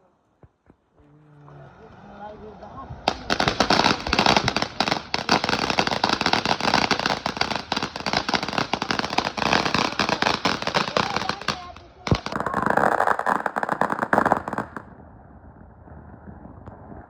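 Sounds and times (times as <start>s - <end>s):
fireworks crackling pops: 3.1s - 15.0s.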